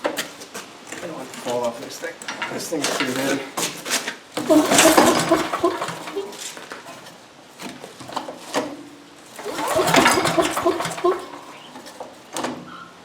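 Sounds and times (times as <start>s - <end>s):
engine cranking without firing: 4.4s - 7.1s, 9.4s - 12.1s.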